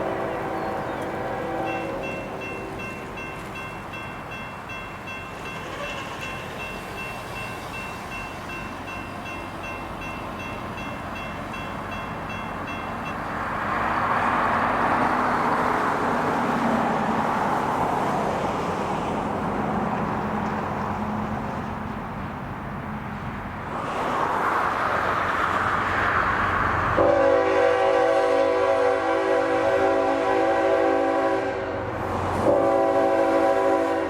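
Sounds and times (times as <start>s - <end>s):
freight train rumbling past: 0.0s - 34.0s.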